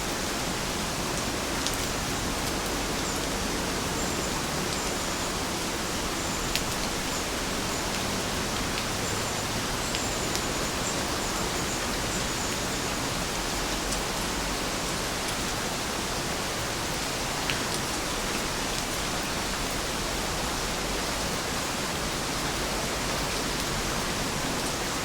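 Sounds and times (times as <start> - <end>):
steady rain falling: 0.0 - 25.0.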